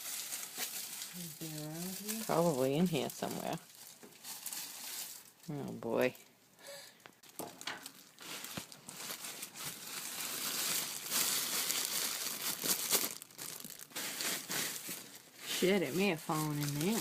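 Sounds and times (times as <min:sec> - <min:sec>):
crinkly material crumpling: 0:00.0 - 0:06.3, 0:07.2 - 0:17.0.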